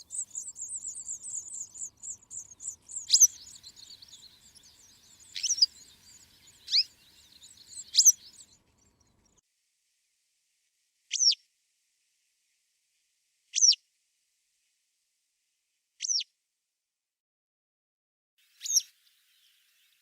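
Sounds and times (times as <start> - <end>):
bird high downward-sweeping call: 0.0 - 8.5
birds twittering: 0.0 - 9.4.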